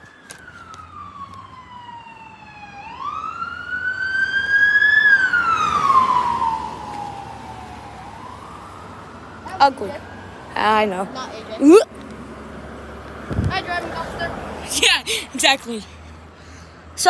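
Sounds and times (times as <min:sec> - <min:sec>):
police siren wailing: 0:00.0 - 0:11.8.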